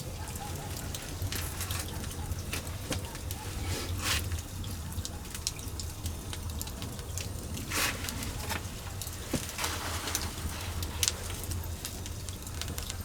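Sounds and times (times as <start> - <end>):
fire crackling: 0.0 - 13.0
fire popping: 0.0 - 13.0.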